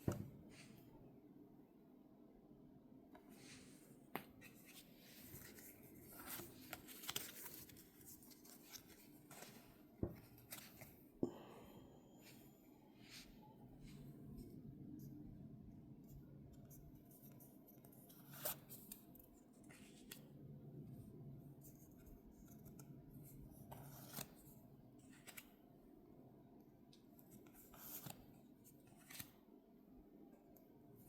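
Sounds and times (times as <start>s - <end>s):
trading cards rustling and clicking: 4.2s - 10.9s.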